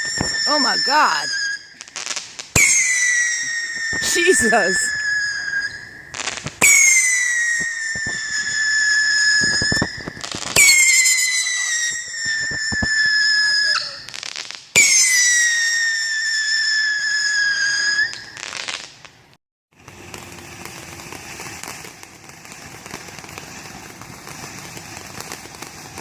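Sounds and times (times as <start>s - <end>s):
crackling firework pops: 0.0s - 0.7s, 1.5s - 16.6s, 17.3s - 26.0s
shrill firework whistle: 0.0s - 18.9s
steady hiss: 19.9s - 26.0s.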